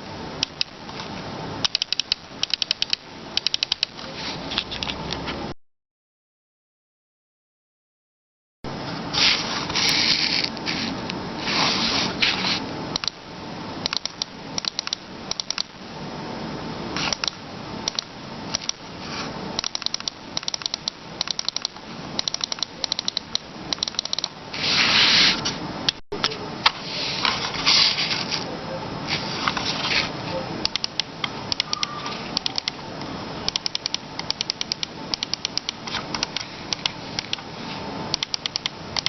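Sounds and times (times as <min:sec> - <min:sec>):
mouse microswitches clicking: 0:01.7 - 0:04.0, 0:13.0 - 0:13.2, 0:13.8 - 0:15.7, 0:19.6 - 0:24.4, 0:30.6 - 0:32.8, 0:33.5 - 0:37.4, 0:38.1 - 0:39.0
rubbing or scraping noise: 0:04.0 - 0:05.5, 0:08.9 - 0:12.7, 0:24.5 - 0:25.6, 0:26.7 - 0:30.4.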